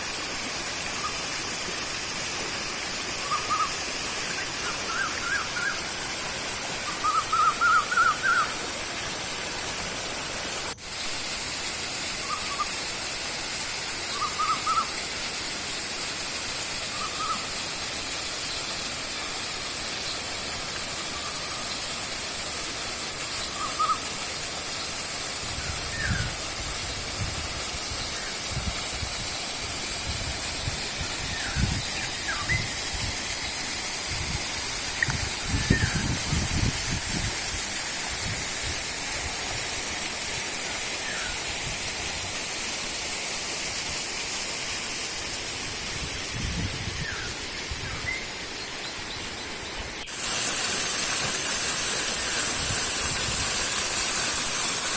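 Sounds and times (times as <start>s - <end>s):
river and waterfall rushing: 0.0s - 54.9s
bird whistling: 3.2s - 3.7s, 4.3s - 5.8s, 6.9s - 8.5s, 14.1s - 14.9s, 17.0s - 17.4s, 23.5s - 24.0s.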